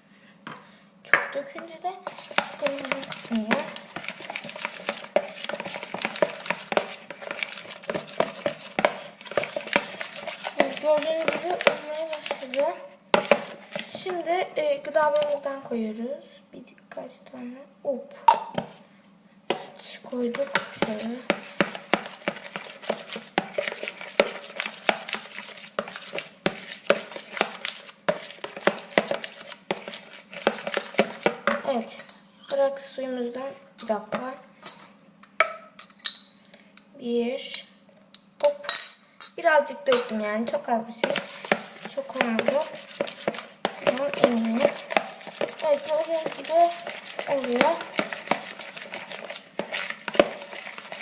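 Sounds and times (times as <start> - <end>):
spoon stirring slime: 1.3 - 15.9, 19.5 - 51.0
spoon scraping a container: 2.0 - 14.2, 20.3 - 32.8, 41.0 - 51.0.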